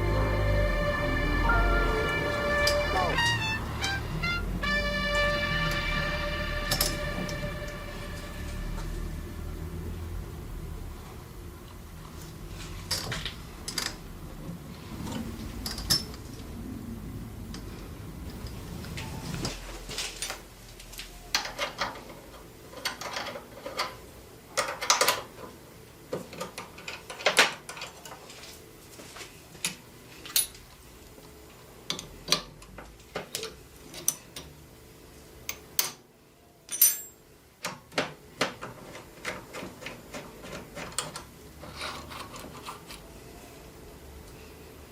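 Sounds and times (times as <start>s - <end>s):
metal parts clinking and knocking: 6.7s - 7.0s, 36.7s - 37.2s.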